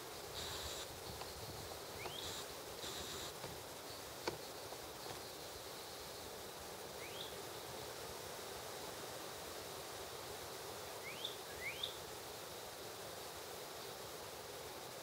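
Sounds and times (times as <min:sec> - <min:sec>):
insect buzzing: 0:00.0 - 0:09.0.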